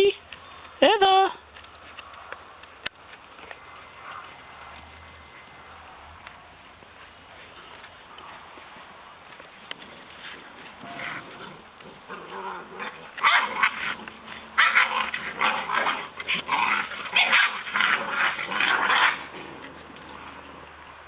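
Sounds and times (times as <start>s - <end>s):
puppies growling: 10.8s - 21.0s.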